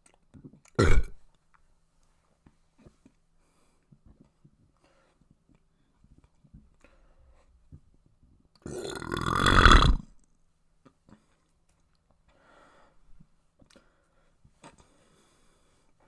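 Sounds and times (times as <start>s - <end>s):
person belching loudly: 0.8s - 1.2s, 8.6s - 10.1s.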